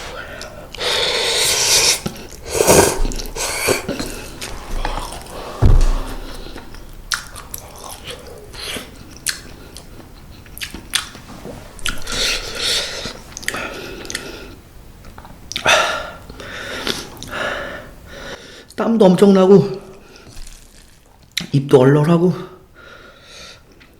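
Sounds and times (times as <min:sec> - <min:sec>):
person chewing noodles: 0:00.0 - 0:11.2, 0:11.8 - 0:14.6, 0:19.9 - 0:21.5
low thump: 0:05.5 - 0:07.0.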